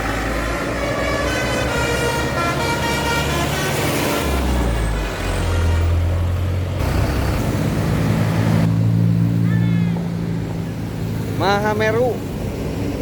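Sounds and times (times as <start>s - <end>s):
bus engine passing: 0.0s - 13.0s
multi-tone bus horn: 0.2s - 6.1s.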